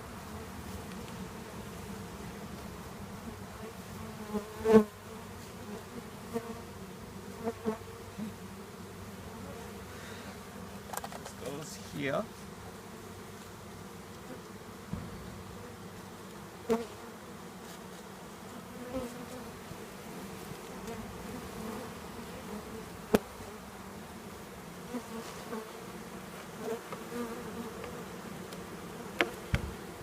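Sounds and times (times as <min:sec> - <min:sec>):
bees buzzing: 0:00.0 - 0:30.0
sharp knocks: 0:14.9 - 0:15.6.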